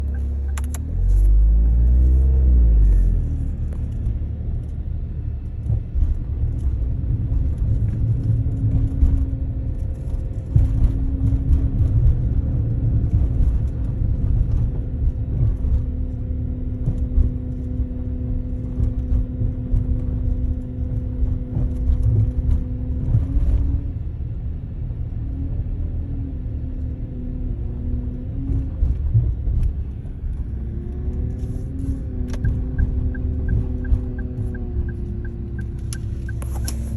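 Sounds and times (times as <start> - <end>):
car engine rumbling: 0.0 - 36.9
abnormal noise from car rear: 28.3 - 36.9.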